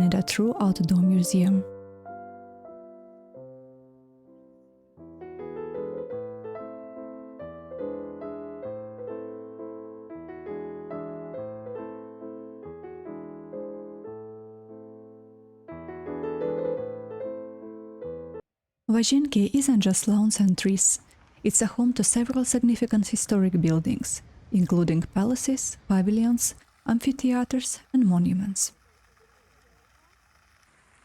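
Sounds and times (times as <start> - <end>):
soft piano music: 0.0 - 18.5.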